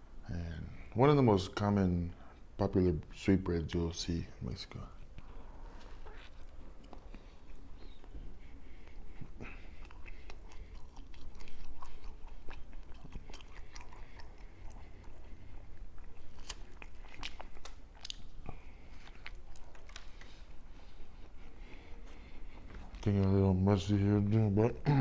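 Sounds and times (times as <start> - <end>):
bread crust crunching: 15.8 - 20.2.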